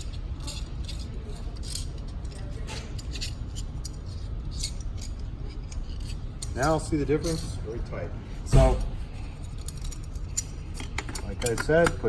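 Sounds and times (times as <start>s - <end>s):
low steady rumble: 0.0s - 12.0s.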